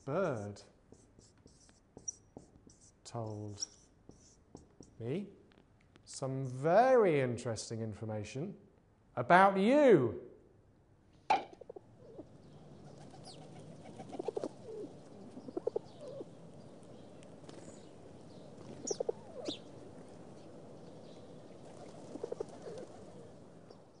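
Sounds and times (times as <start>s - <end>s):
faint steady background noise: 0.0s - 24.0s
low pulsed bird calls: 11.6s - 19.7s.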